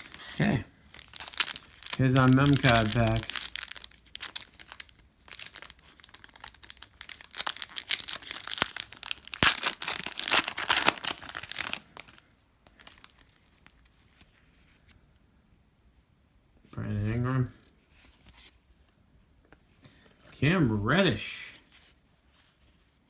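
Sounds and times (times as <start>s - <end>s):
plastic foil wrapper tearing: 0.0s - 13.3s.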